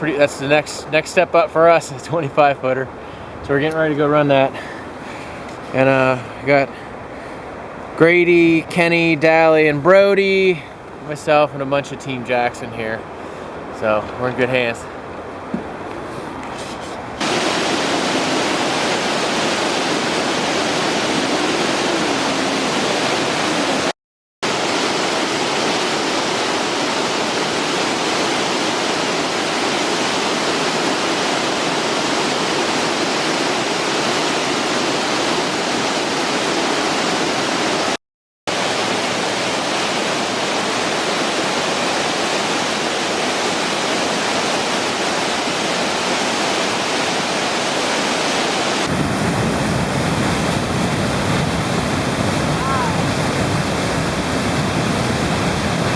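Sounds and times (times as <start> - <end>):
waterfall rushing: 17.0 - 55.9.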